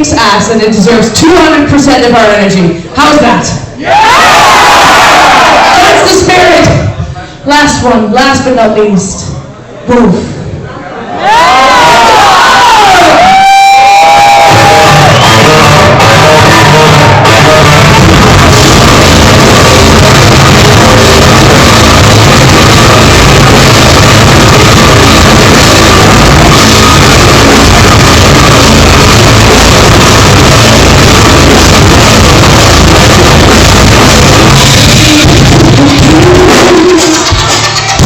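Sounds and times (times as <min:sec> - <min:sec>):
metal band playing live: 0:13.4 - 0:38.0.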